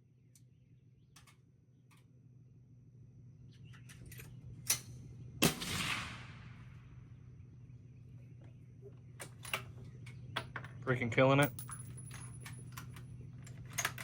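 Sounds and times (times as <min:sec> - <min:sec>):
rifle shot: 0:05.4 - 0:06.9.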